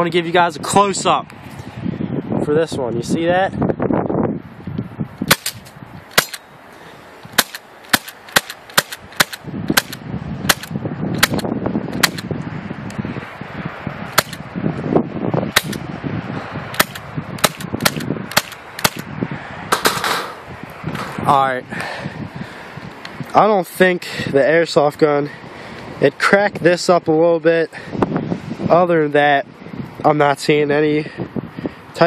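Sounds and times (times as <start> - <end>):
airsoft rifle shots: 5.3 - 6.4, 7.4 - 11.4, 12.0 - 12.3, 14.2 - 14.4, 15.6 - 15.8, 16.8 - 19.1.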